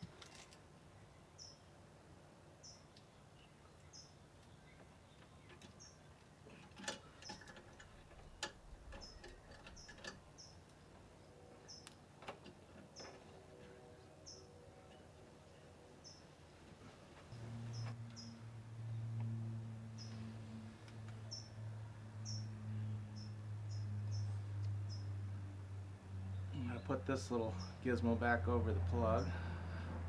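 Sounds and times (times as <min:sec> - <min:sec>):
small bird chirping: 0:07.1 - 0:10.7.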